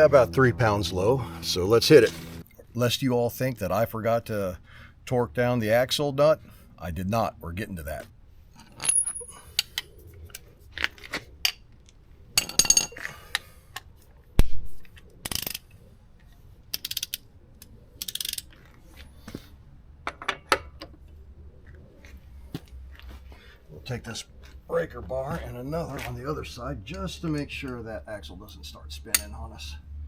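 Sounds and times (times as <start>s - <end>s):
metal hand tools clinking: 12.4s - 13.4s.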